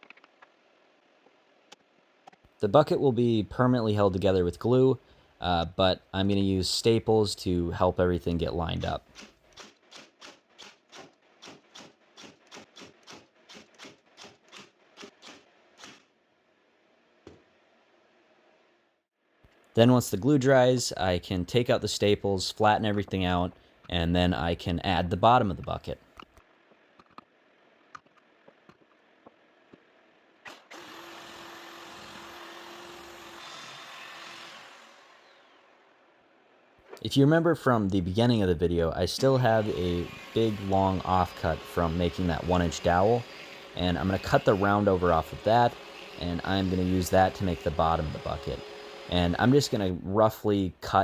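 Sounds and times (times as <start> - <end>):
power tool running: 30.5 - 35.9, 39.5 - 49.8.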